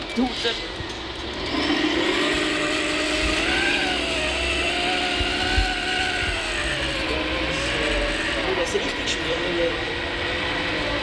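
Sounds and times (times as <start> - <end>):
hydraulic pump whining: 1.2 - 11.0.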